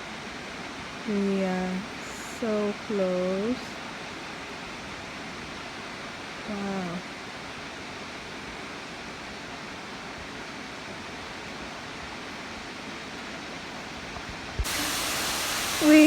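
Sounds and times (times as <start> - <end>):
waterfall rushing: 13.8 - 16.0.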